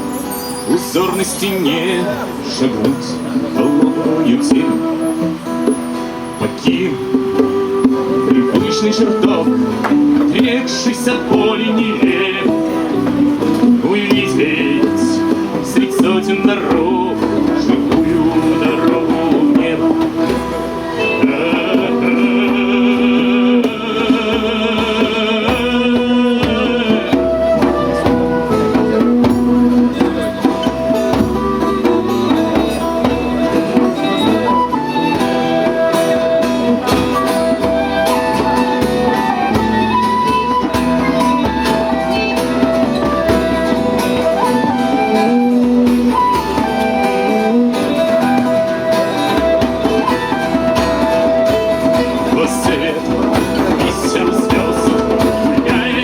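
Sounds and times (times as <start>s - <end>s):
high wavering melody line: 0.0s - 24.7s
band playing with guitar: 0.0s - 56.0s.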